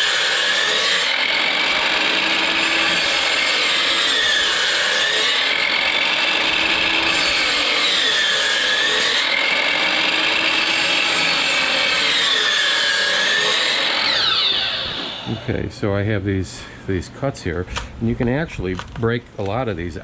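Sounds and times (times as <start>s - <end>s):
power saw cutting wood: 0.0s - 15.6s.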